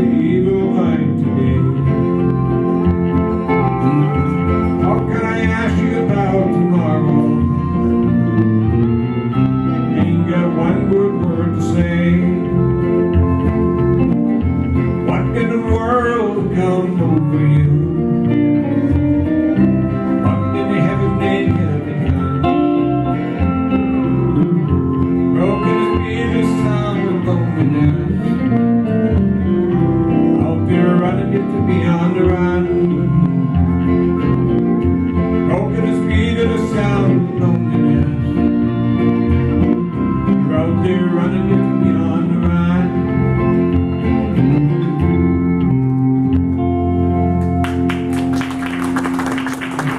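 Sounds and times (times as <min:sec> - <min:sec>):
person singing: 0:00.0 - 0:13.8, 0:14.9 - 0:28.8, 0:29.4 - 0:45.3
country music with acoustic guitar: 0:00.0 - 0:49.9
applause: 0:47.4 - 0:49.9.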